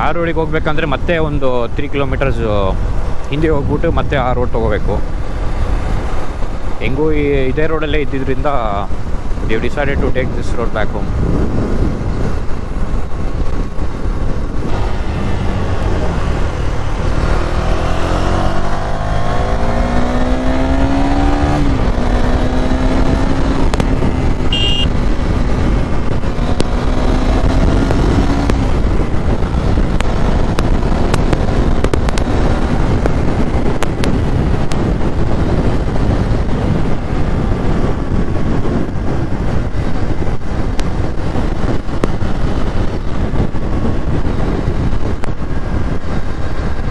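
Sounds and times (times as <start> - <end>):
wind on microphone: 0.0 - 46.9
motorcycle engine: 11.0 - 46.9.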